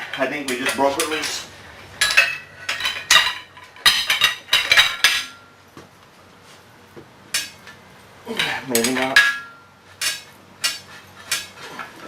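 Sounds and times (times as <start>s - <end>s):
metal strikes ringing: 8.3s - 11.5s.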